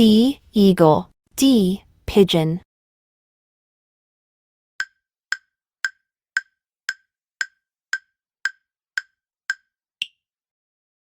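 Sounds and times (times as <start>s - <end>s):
wood-block-like timer ticks: 4.8s - 10.2s.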